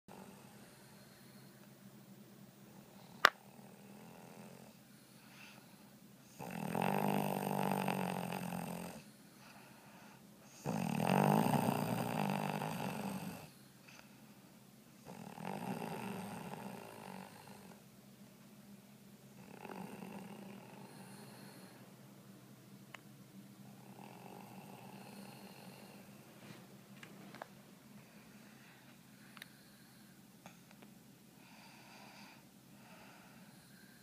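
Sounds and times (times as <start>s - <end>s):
person snoring: 3.0s - 4.8s, 6.3s - 9.1s, 10.5s - 13.6s, 15.0s - 17.8s, 19.4s - 21.8s, 23.8s - 26.1s.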